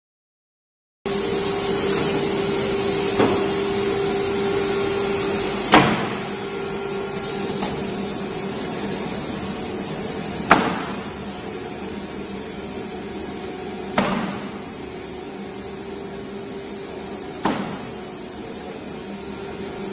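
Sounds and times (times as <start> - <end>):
router machine humming: 1.1 - 10.5.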